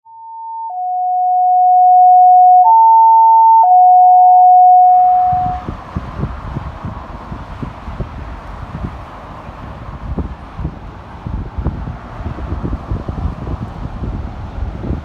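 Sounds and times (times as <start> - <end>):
two-tone electronic alert: 0.6 - 5.6
wind on microphone: 4.9 - 15.0.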